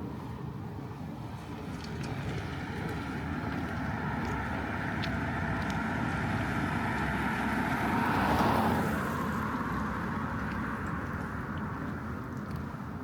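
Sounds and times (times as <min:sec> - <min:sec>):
tyres hissing on wet road: 0:02.1 - 0:11.4.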